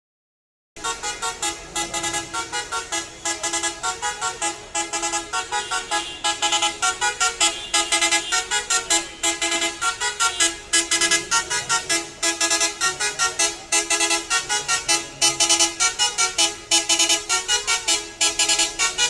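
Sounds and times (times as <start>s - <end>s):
music with fast beat: 6.3s - 19.0s.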